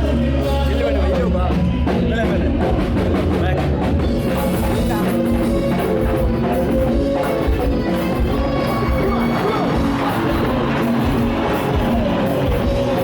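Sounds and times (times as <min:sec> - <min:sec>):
drum kit: 0:00.0 - 0:13.0
rock music: 0:00.0 - 0:13.0
guitar playing: 0:04.0 - 0:13.0.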